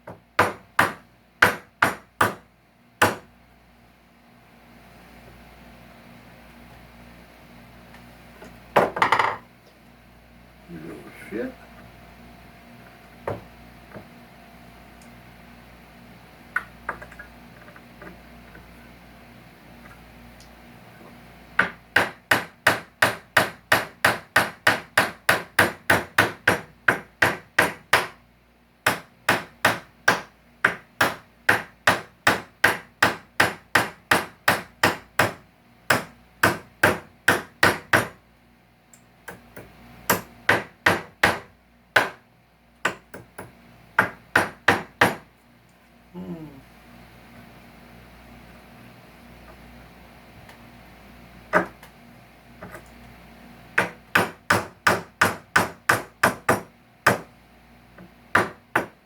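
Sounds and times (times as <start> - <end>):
hammer striking nails in wood: 0.1 - 2.4, 3.0 - 3.3, 21.6 - 28.2, 28.9 - 38.2, 39.3 - 42.2, 42.8 - 45.2, 53.8 - 57.3, 58.3 - 59.0.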